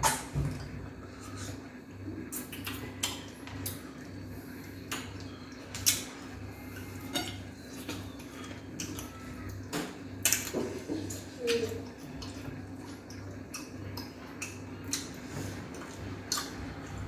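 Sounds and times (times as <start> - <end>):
steady low hum: 0.0 - 17.0
dishes and cutlery clinking: 7.0 - 11.7.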